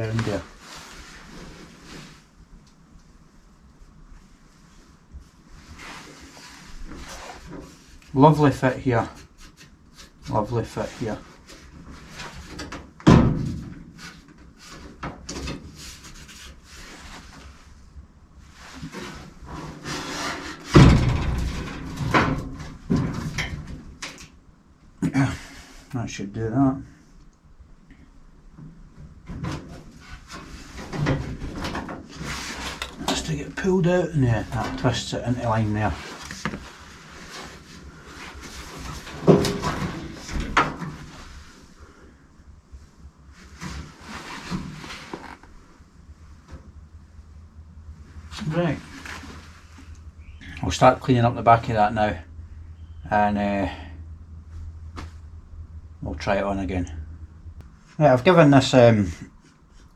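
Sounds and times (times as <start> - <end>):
metal panel knocking and clattering: 20.7 - 24.2.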